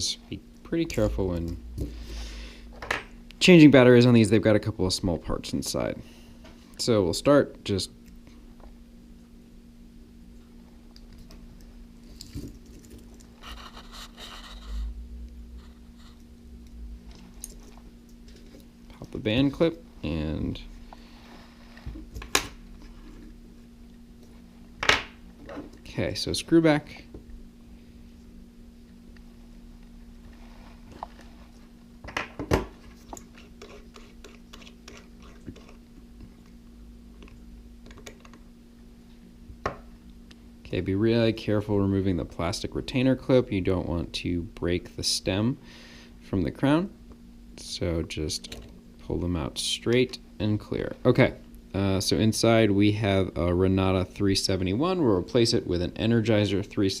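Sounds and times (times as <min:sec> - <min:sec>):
low hum: 0:00.0 - 0:04.2, 0:08.0 - 0:32.0
steady low hum: 0:00.0 - 0:57.0
tool scraping on watch: 0:33.3 - 0:35.8.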